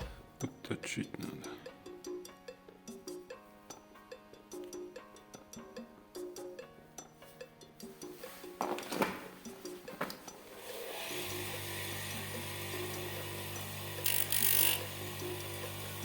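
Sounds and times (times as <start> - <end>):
small electric grinder humming: 10.6 - 16.0.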